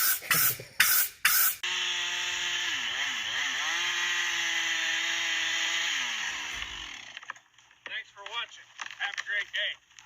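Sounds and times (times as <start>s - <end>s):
two-stroke chainsaw engine running: 1.6s - 7.2s.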